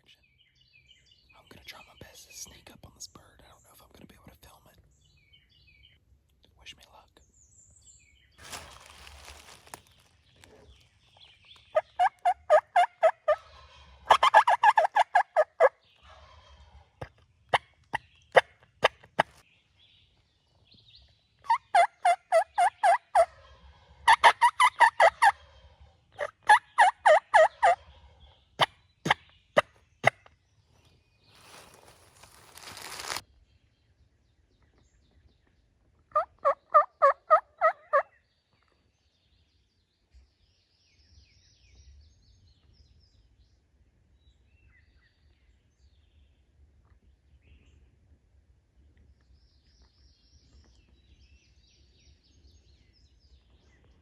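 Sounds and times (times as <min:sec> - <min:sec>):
wild turkey calling: 0:08.4 - 0:19.4, 0:21.4 - 0:30.3, 0:36.1 - 0:38.2.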